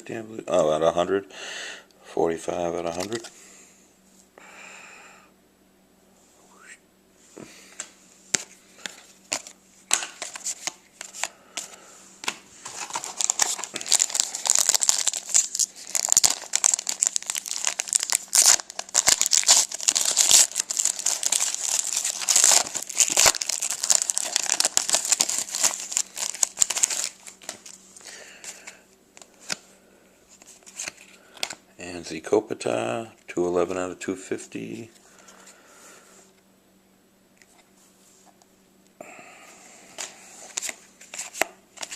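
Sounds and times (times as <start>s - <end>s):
wrapper crinkling and tearing: 12.6s - 28.6s.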